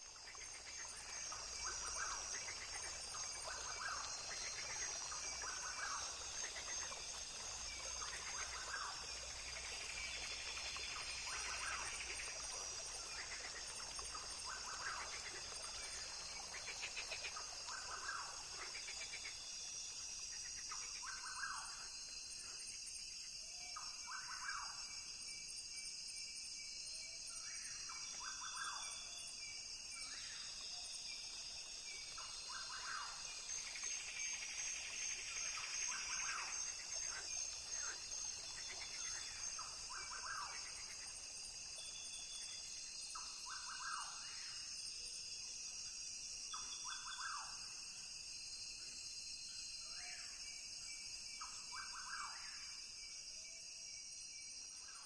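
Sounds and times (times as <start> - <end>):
high-pitched insect chorus: 0.0 - 55.0.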